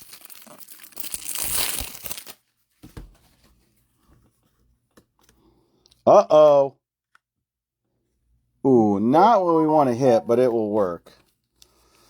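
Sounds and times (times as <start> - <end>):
foil wrapper crinkling: 0.0 - 2.4.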